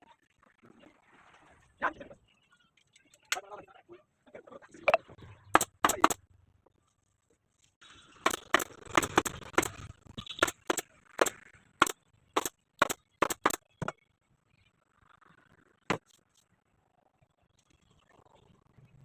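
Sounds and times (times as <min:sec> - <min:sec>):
sharp snaps: 0:05.6 - 0:06.2, 0:08.3 - 0:13.6.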